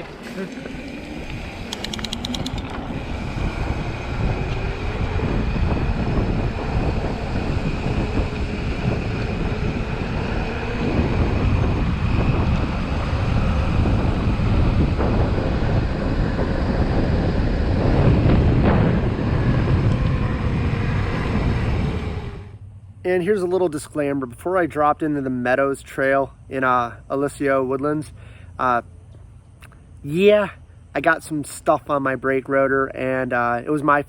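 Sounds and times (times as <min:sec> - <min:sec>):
tyres rumbling over dirt: 0:00.0 - 0:22.5
wind buffeting microphone: 0:00.0 - 0:23.7.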